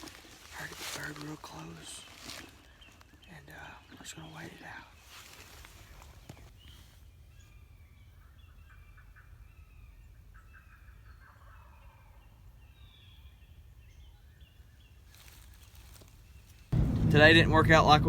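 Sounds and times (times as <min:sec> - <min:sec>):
turkey gobbling: 0:10.4 - 0:12.2.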